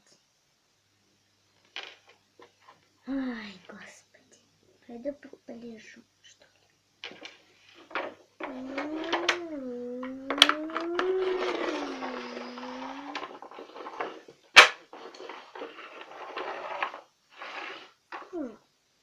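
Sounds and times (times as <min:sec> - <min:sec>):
toys rustling and clicking: 0:07.0 - 0:18.4
child humming: 0:08.4 - 0:13.3, 0:18.2 - 0:18.7.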